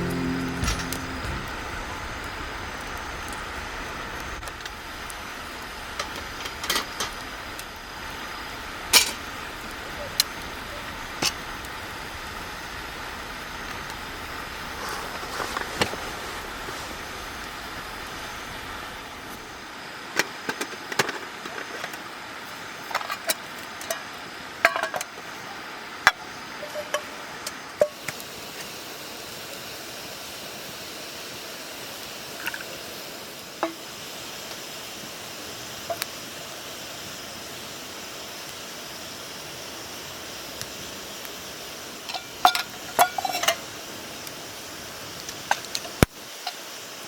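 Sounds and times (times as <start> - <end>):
steady background noise: 0.0 - 47.0
camp cookware clinking: 8.9 - 9.3, 22.9 - 25.2, 26.1 - 27.1, 33.6 - 33.9, 42.0 - 43.8, 45.4 - 46.7.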